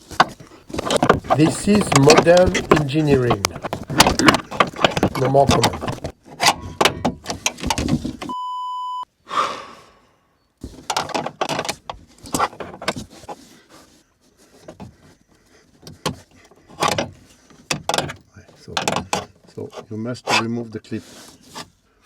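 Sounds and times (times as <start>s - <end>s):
clicks and knocks of gas strut: 0.0s - 8.3s, 10.7s - 13.3s, 15.7s - 20.4s
electronic censor bleep: 8.3s - 9.1s.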